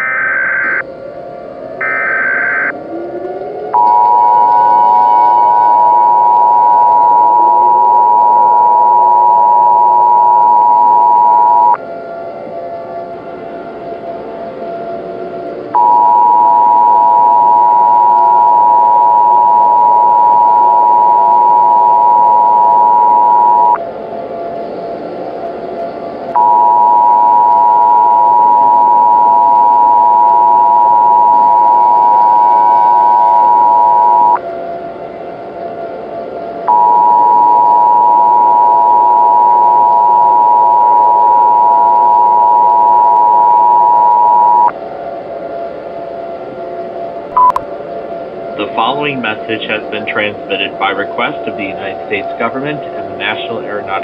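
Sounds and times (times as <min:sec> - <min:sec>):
two-tone alarm: 0:00.0 - 0:01.2, 0:01.8 - 0:12.0, 0:15.0 - 0:24.0, 0:26.2 - 0:34.6, 0:36.6 - 0:44.8, 0:47.3 - 0:47.6
steady background noise: 0:00.0 - 0:54.0.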